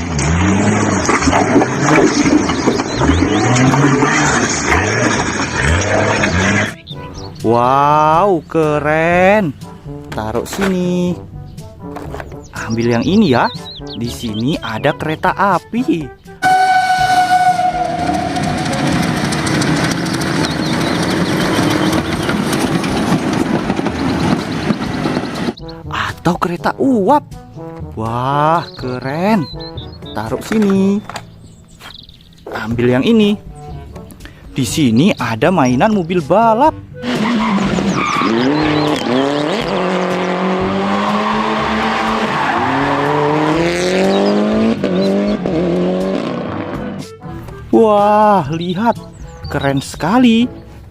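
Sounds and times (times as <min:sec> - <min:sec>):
racing car engine revving: 0:00.0 - 0:06.9, 0:16.4 - 0:25.6, 0:37.0 - 0:47.1
steam train whistle: 0:16.4 - 0:19.4
train clattering: 0:16.4 - 0:25.6
tyre squeals: 0:16.4 - 0:25.6, 0:37.0 - 0:39.8, 0:40.8 - 0:45.4.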